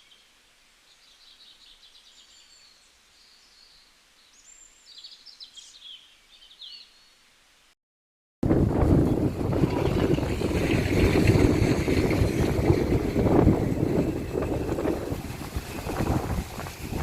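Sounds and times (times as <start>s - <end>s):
wind gusting against microphone: 8.4s - 17.0s.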